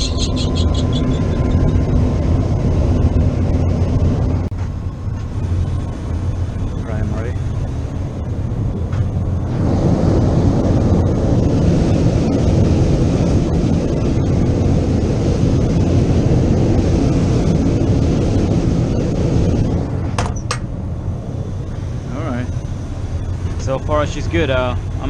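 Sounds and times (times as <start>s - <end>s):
heater burner and blower rumble: 0.0s - 25.0s.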